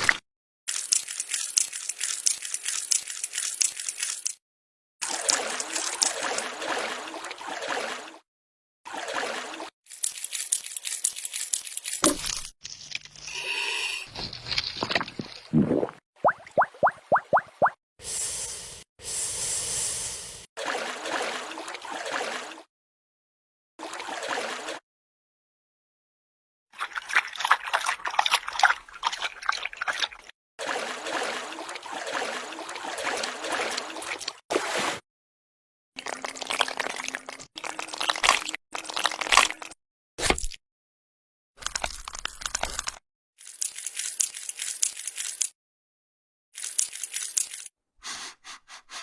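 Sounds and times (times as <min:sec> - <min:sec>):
bubbling gurgling water: 0:14.8 - 0:17.8, 0:36.0 - 0:39.7.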